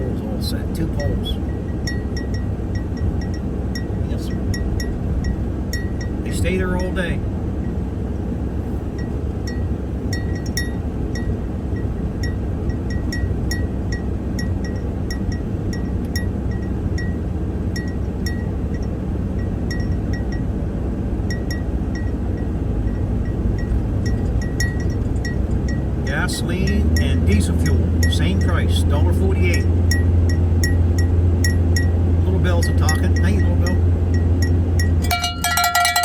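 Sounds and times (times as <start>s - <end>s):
vehicle road and engine rumble: 0.0s - 36.0s
light metallic clinks rattling: 34.1s - 36.0s.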